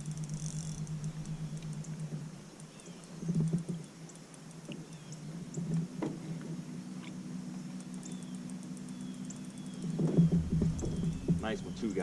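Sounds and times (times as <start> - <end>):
fishing reel ticking: 0.0 - 3.1, 7.7 - 9.9
steady low hum: 0.0 - 12.0.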